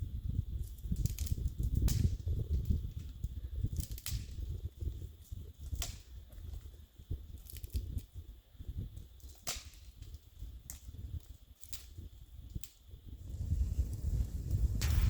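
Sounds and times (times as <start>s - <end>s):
wood fire crackling and popping: 0.6s - 8.1s, 8.9s - 15.0s
low rumble: 13.2s - 15.0s.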